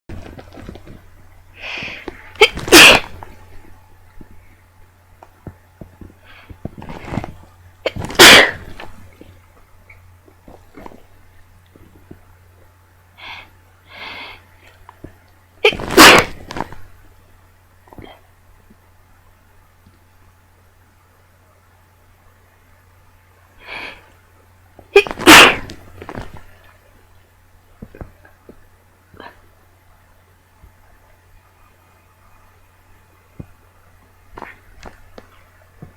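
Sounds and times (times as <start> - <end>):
person sneezing: 1.6 - 3.4, 7.9 - 8.9, 15.6 - 16.7, 25.0 - 25.8.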